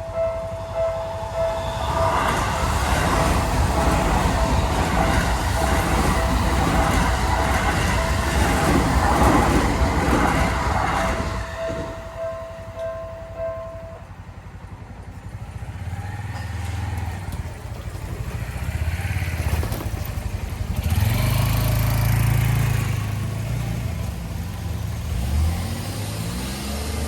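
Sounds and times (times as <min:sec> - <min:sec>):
railroad crossing warning bell: 0:00.0 - 0:19.4
vehicle engines pulling away: 0:15.3 - 0:27.0
engine revving: 0:18.5 - 0:27.0.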